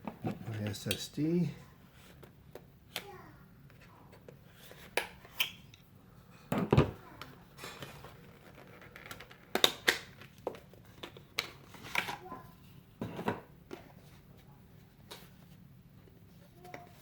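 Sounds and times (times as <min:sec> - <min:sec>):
plastic packaging clicks and clatter: 0:07.6 - 0:12.2.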